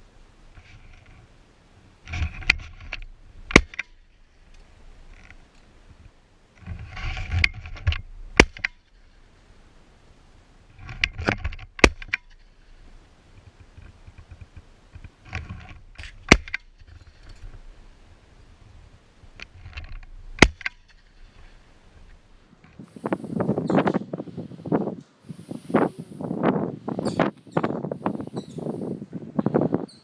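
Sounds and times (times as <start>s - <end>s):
close rustling and handling noise: 10.7s - 24.0s.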